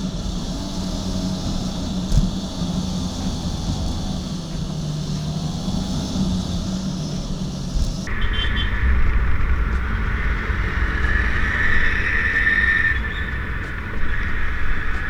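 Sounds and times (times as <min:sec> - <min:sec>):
vehicle road noise rumble: 0:00.0 - 0:15.0
wind on microphone: 0:07.8 - 0:15.0.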